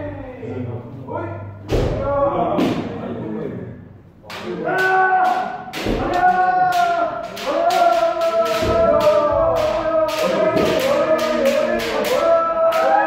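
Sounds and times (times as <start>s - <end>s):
people shouting together: 4.3s - 13.0s
bamboo sword strikes: 4.8s - 12.9s.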